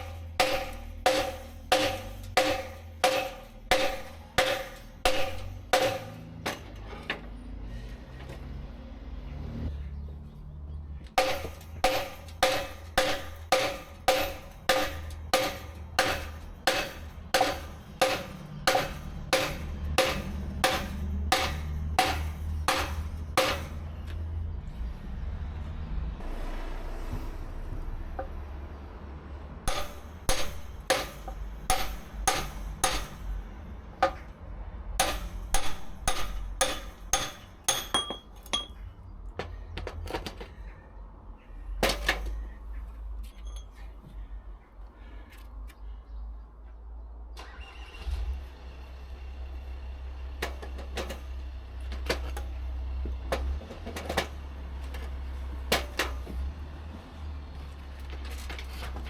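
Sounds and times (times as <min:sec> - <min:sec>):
hammer striking metal: 0:00.0 - 0:06.8, 0:11.2 - 0:24.0, 0:29.7 - 0:34.3, 0:35.0 - 0:38.9.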